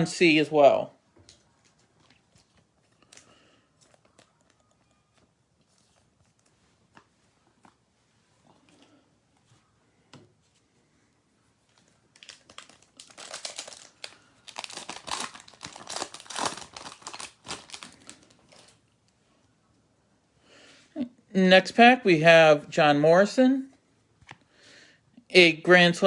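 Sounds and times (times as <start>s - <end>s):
plastic wrapper tearing and crinkling: 11.7s - 18.8s.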